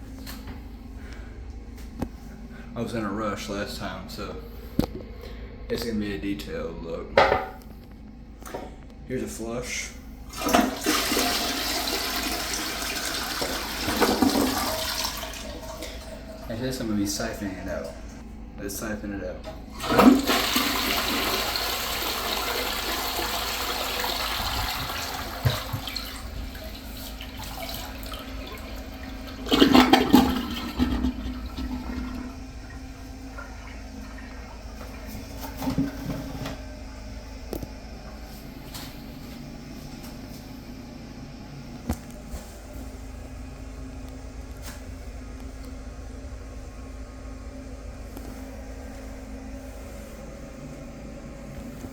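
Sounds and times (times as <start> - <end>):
toilet flushing: 9.6 - 18.8, 19.4 - 40.4
water running as tank refills: 9.6 - 41.0.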